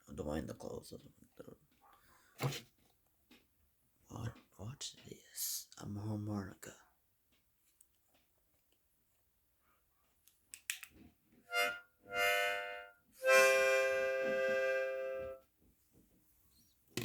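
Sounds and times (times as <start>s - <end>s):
harmonica chords: 11.5s - 15.4s.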